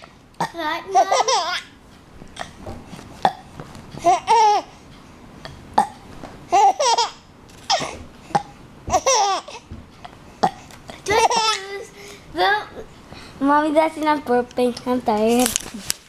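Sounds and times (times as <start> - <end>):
baby laughing: 0.9 - 1.7, 4.0 - 4.7, 6.5 - 8.0, 8.9 - 9.7, 10.9 - 12.0.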